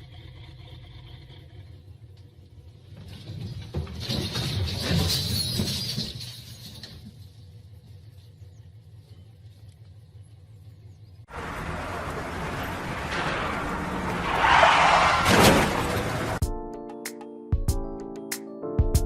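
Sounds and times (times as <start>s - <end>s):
vehicle engine running: 7.2s - 14.4s.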